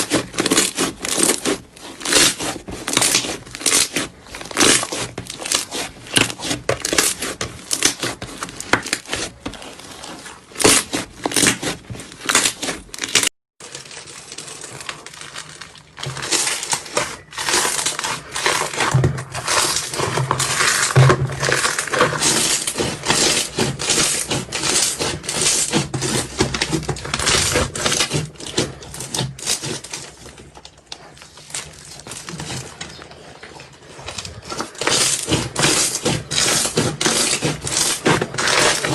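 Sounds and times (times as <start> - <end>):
slime crackling and popping: 0.0 - 33.0.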